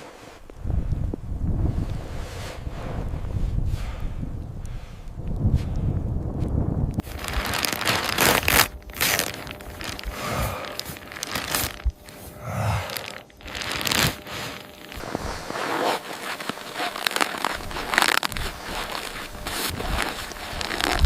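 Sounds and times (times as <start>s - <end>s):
material crinkling and rustling: 7.0s - 21.0s.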